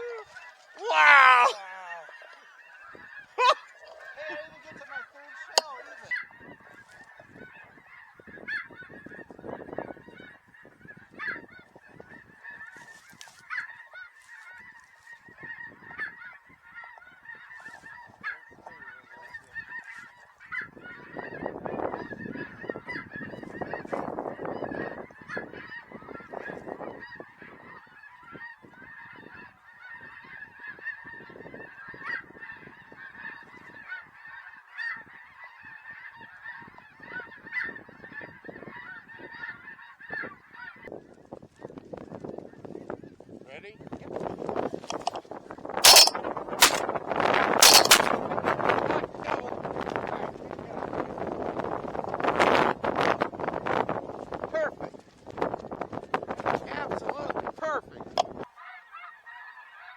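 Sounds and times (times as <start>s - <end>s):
geese honking: 0.0s - 23.9s.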